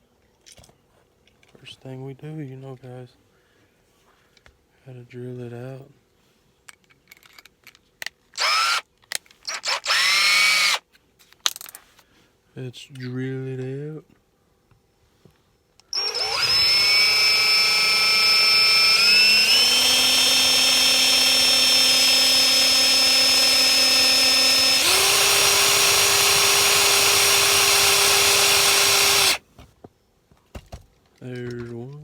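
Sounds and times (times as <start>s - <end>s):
power drill whining: 8.4s - 8.8s, 9.4s - 10.8s, 15.9s - 29.4s.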